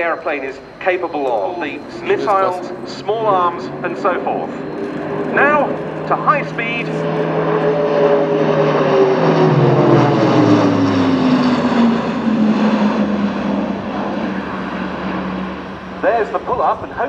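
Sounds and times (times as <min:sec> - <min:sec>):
propeller aircraft passing: 0:00.0 - 0:17.0.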